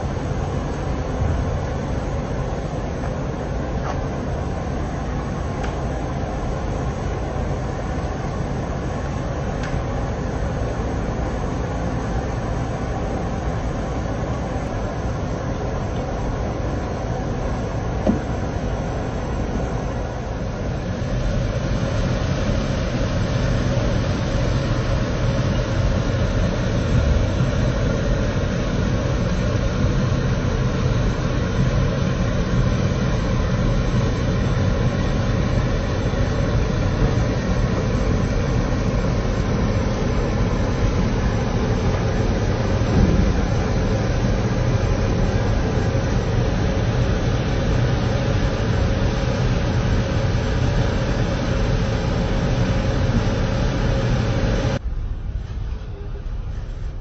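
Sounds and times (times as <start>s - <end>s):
heavy machinery rumbling: 0.0s - 57.0s
short knock: 18.0s - 18.3s.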